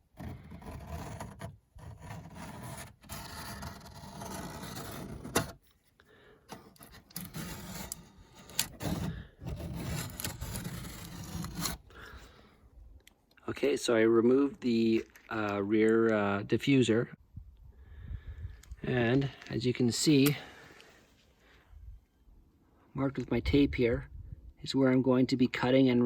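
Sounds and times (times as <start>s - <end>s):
pencil scratching on tape: 0.0s - 5.6s, 6.5s - 11.8s.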